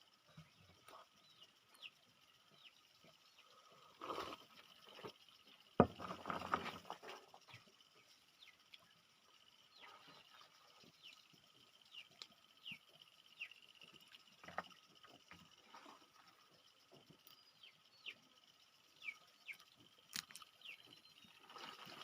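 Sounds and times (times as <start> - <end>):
peanut shell snapping: 20.1 - 20.5
shells crackling and crunching: 20.1 - 20.6.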